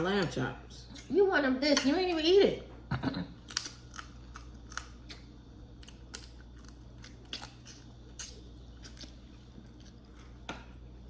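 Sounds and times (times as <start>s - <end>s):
person chewing crunchy food: 3.3s - 11.0s.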